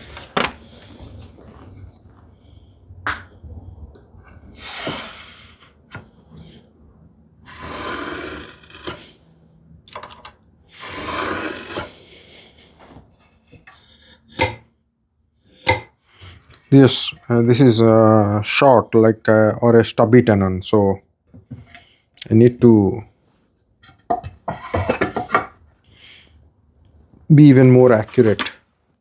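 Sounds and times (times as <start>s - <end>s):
wood rubbing and scraping: 7.5s - 9.2s, 9.9s - 14.6s, 23.8s - 25.5s, 27.8s - 28.6s
wood knocking on workbench: 24.1s - 25.5s.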